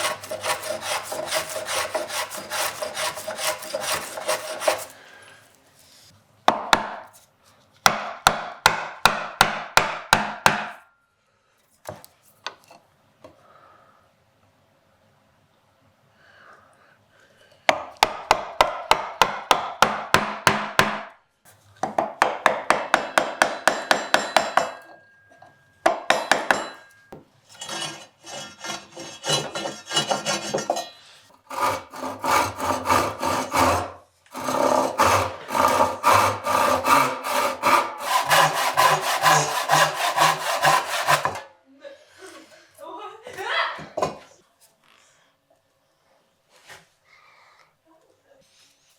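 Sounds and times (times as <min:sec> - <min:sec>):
hand tool rubbing wood: 0:00.0 - 0:05.2, 0:27.5 - 0:30.9, 0:31.5 - 0:41.5.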